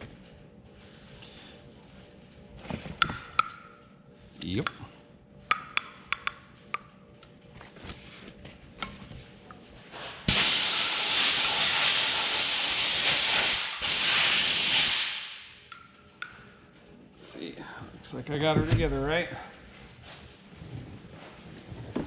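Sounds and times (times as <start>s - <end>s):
pressurised air hissing from nozzle: 10.3s - 15.4s.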